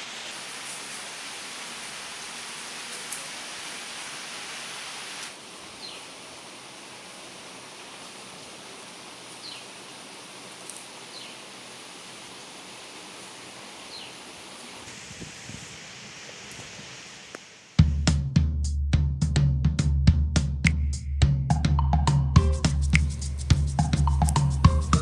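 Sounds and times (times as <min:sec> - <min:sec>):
background hiss: 0:00.0 - 0:18.3, 0:20.6 - 0:25.0
high downward-sliding chirps: 0:21.7 - 0:25.0.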